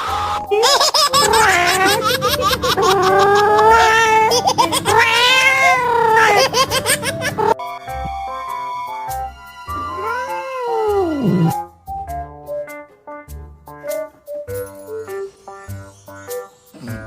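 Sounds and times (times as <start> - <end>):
cat yowling: 1.1 - 7.6, 9.7 - 11.6.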